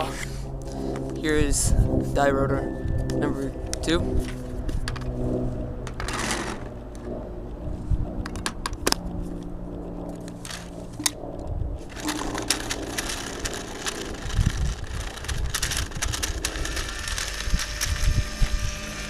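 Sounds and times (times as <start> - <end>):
balls clattering through paintball loader: 5.9 - 6.7, 11.9 - 18.0.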